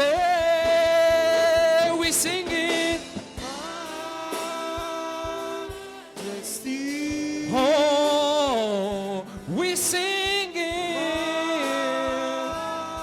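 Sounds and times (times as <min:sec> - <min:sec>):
person singing gospel: 0:00.0 - 0:13.0
soft instrumental accompaniment: 0:00.0 - 0:13.0.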